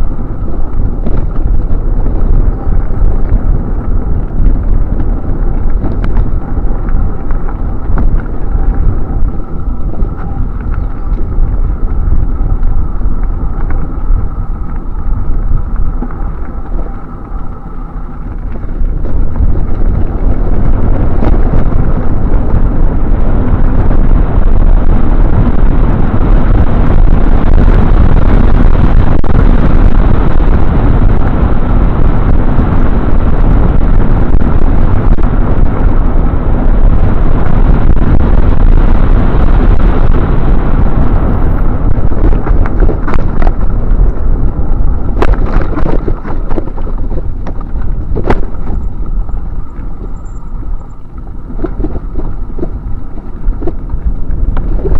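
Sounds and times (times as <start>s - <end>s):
wind buffeting microphone: 0.0s - 54.9s.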